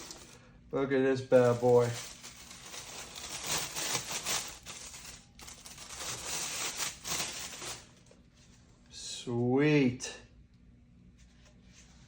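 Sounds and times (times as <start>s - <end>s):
packaging rustling and crinkling: 0.0s - 0.4s, 1.3s - 8.2s.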